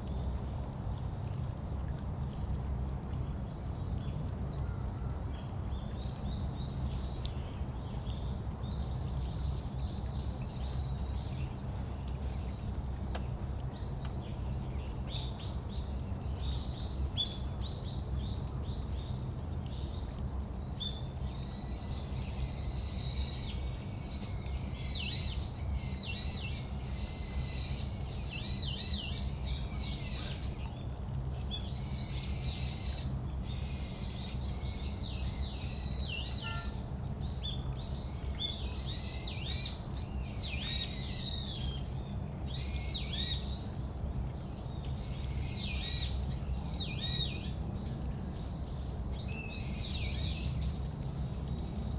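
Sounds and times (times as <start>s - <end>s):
cricket trilling: 13.7s - 51.9s.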